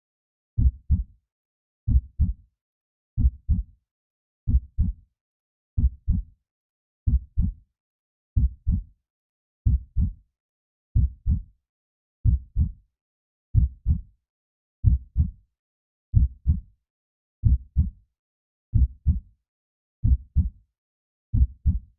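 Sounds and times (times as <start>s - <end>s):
heartbeat thumps: 11.0s - 11.4s, 12.3s - 12.7s, 14.8s - 15.3s, 17.4s - 17.9s.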